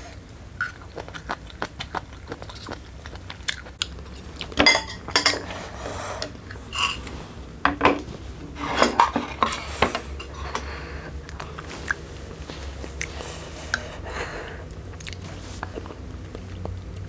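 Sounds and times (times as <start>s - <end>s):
utensils clinking against dish: 4.1s - 7.1s, 7.7s - 10.8s.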